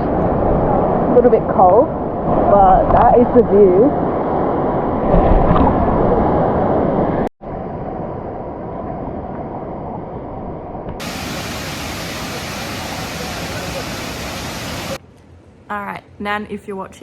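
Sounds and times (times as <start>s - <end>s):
waterfall rushing: 11.0s - 15.0s.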